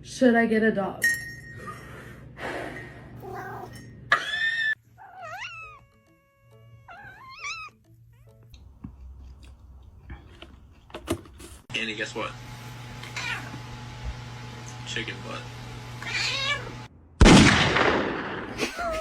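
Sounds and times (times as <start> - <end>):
cat meowing and yowling: 3.2 - 8.4, 13.2 - 13.5, 16.0 - 16.7.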